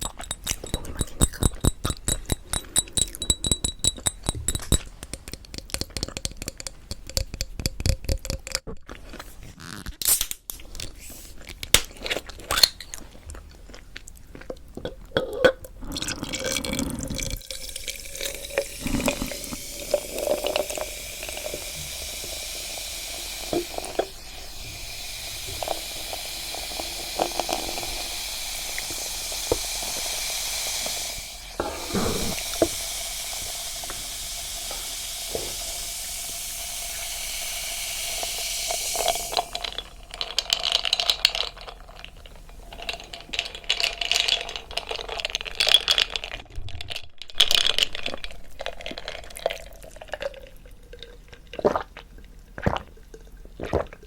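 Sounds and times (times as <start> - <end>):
steady hiss: 17.7 - 40.1.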